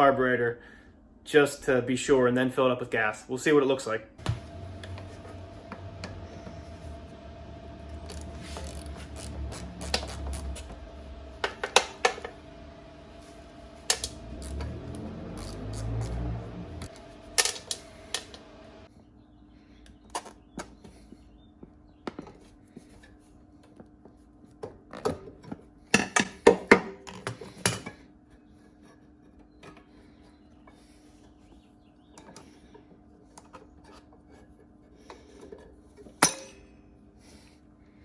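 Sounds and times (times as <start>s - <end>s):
faint steady hum: 4.2s - 20.0s.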